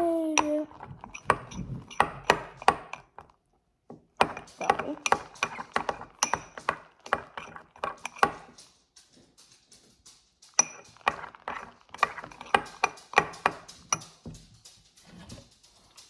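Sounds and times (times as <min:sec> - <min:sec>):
sharp ringing taps and knocks: 0:04.0 - 0:09.8, 0:10.5 - 0:15.4.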